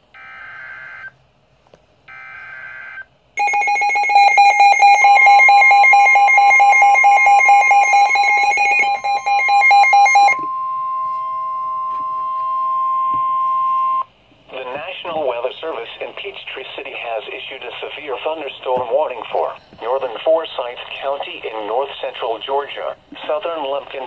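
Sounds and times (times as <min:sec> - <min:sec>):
rapidly pulsing electronic alarm: 0:02.1 - 0:14.1
steady warning tone: 0:02.1 - 0:14.1.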